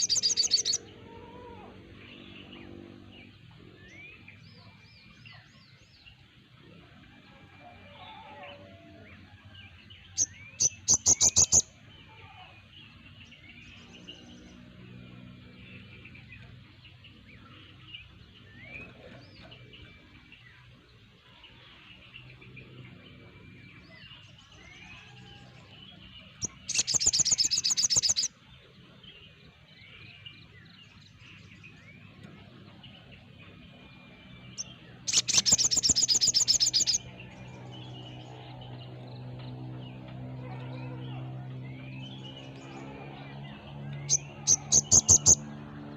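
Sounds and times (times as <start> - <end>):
rapid rattling bird calls: 0.0 - 0.8, 10.2 - 11.7, 26.4 - 28.3, 34.6 - 37.1, 44.0 - 45.5
birds chirping and whistling: 0.0 - 1.0, 9.1 - 11.9, 15.4 - 40.1, 40.8 - 45.9.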